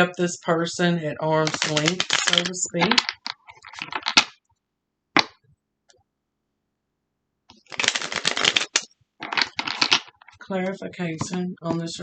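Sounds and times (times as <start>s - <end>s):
cards rustling: 1.4s - 4.4s, 7.5s - 10.4s.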